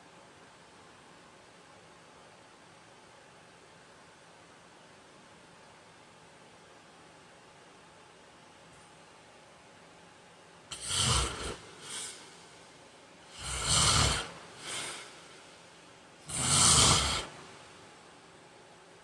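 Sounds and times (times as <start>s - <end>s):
man snoring: 10.7s - 12.5s, 13.3s - 15.4s, 16.2s - 17.5s.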